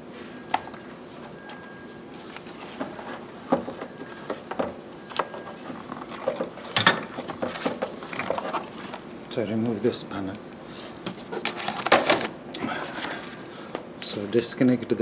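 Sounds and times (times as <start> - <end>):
plastic parts clicking and knocking: 2.7 - 9.0, 11.0 - 12.3.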